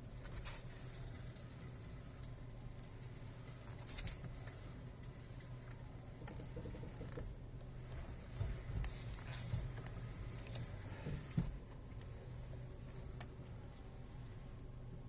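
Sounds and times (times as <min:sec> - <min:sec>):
steering clicks: 0:00.0 - 0:14.2
low steady hum: 0:00.0 - 0:15.0
steering creak: 0:03.6 - 0:12.2.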